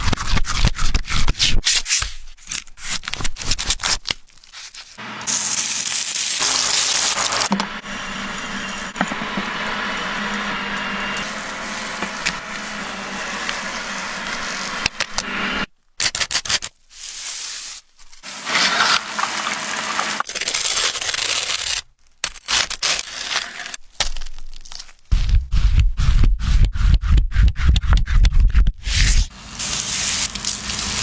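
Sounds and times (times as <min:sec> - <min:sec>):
food sizzling in a pan: 0:05.3 - 0:14.9, 0:29.4 - 0:31.0
scraping and rubbing: 0:05.7 - 0:15.7, 0:24.7 - 0:29.3.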